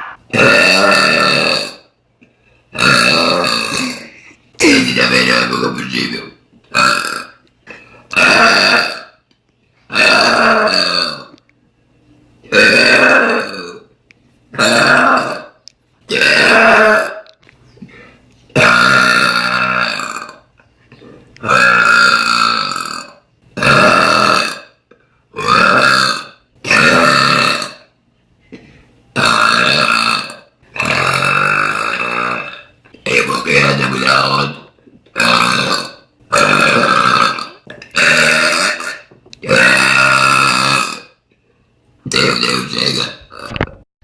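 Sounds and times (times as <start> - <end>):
woman belching loudly: 0.0 - 1.8, 2.8 - 5.5, 6.7 - 7.4, 8.2 - 9.2, 9.9 - 11.4, 12.5 - 13.9, 14.6 - 17.3, 18.6 - 20.4, 21.4 - 24.8, 25.4 - 27.9, 29.2 - 34.4, 35.2 - 41.2, 42.1 - 43.8.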